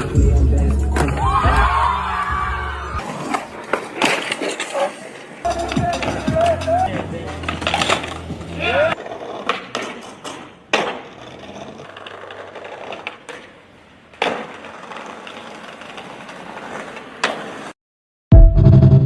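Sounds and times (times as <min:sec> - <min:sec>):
skateboard wheels rolling: 0:00.0 - 0:17.8
skateboard clacks: 0:03.0 - 0:17.7.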